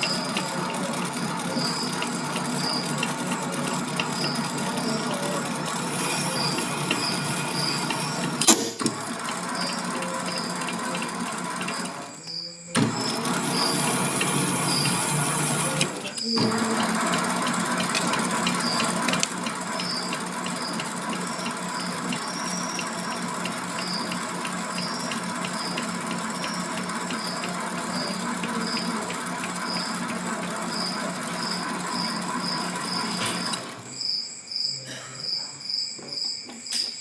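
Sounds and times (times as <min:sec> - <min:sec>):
lathe motor humming: 0:00.0 - 0:12.2, 0:12.8 - 0:34.0
gear train ticking: 0:16.5 - 0:30.2.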